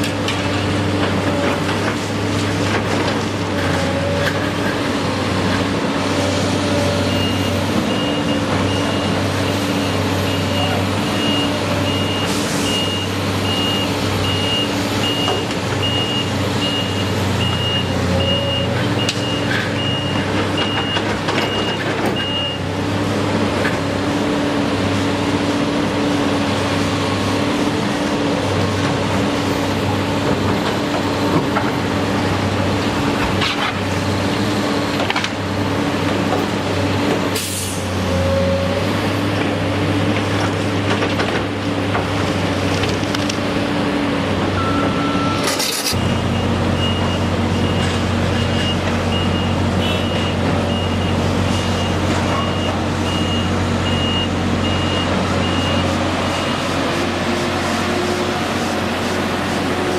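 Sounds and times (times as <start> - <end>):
heavy vehicle engine running: 0.0 - 59.9
reversing alarm beeping: 7.1 - 22.6, 44.6 - 56.7.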